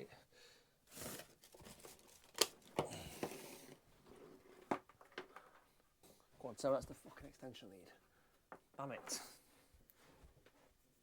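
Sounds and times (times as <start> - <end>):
rustling and handling noise: 0.9 - 7.1.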